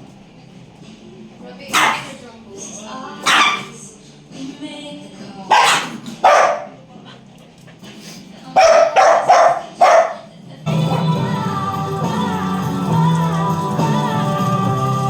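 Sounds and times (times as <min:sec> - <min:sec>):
dog barking: 0:01.7 - 0:02.3, 0:03.2 - 0:03.9, 0:05.5 - 0:06.8, 0:08.6 - 0:10.3.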